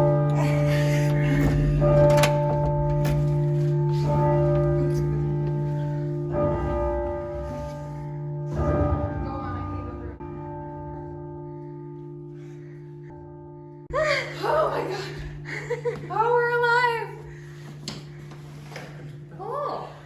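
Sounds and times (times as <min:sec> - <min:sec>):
church bells ringing: 0:00.0 - 0:12.1.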